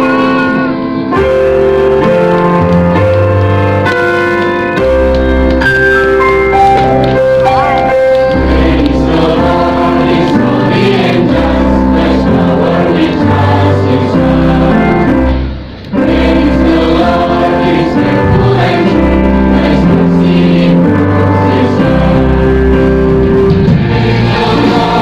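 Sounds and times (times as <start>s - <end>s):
choral singing over chords: 6.1s - 25.0s.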